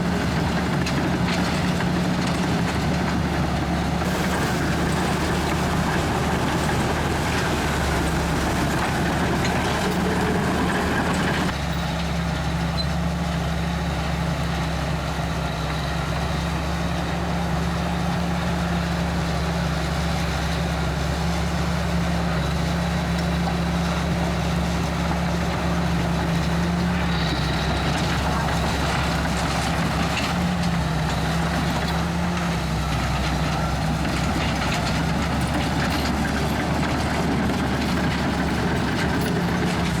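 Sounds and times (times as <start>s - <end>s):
bulldozer diesel engine running: 0.0s - 40.0s.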